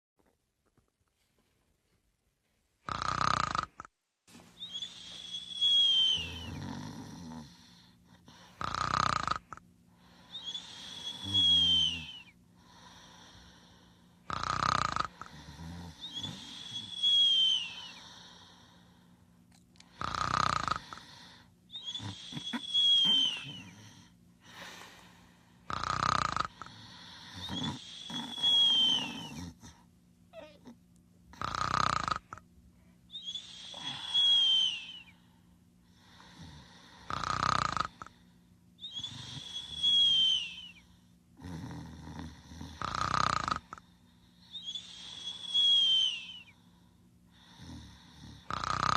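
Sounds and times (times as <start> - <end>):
faint steady hum: 0.2 - 48.9
snoring with whistling note: 2.9 - 3.8, 4.6 - 18.8, 19.9 - 24.1, 25.7 - 29.8, 31.4 - 32.4, 33.1 - 35.3, 35.9 - 38.2, 38.8 - 46.7, 47.3 - 48.9.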